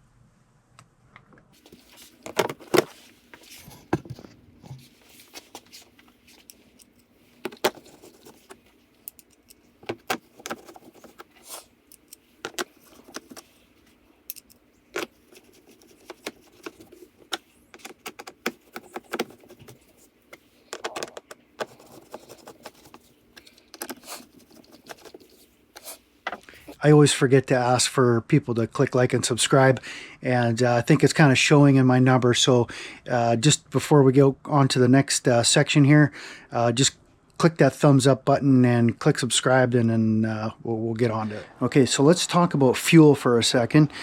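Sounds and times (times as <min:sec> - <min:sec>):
faint steady hum: 0:00.0 - 0:44.0
clicks and taps of parts: 0:09.0 - 0:11.2, 0:16.1 - 0:19.5, 0:23.4 - 0:24.0.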